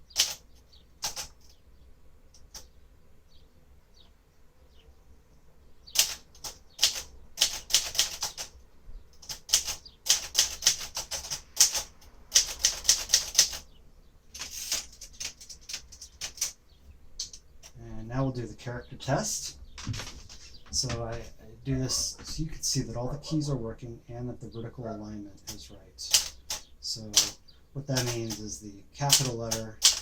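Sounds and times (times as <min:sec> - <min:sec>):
manual typewriter clatter: 0:00.0 - 0:00.4, 0:01.0 - 0:01.5, 0:06.0 - 0:08.5, 0:09.2 - 0:13.6, 0:14.4 - 0:16.6, 0:19.8 - 0:21.1, 0:25.4 - 0:30.0.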